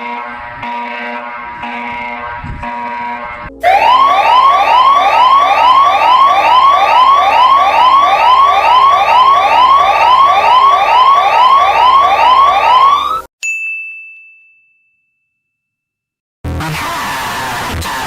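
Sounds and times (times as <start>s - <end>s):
electronic siren whooping: 0.0s - 13.3s.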